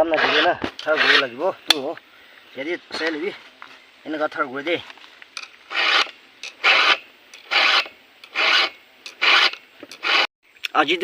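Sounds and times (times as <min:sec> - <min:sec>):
hand file rasping: 0:00.1 - 0:01.4, 0:05.7 - 0:10.3.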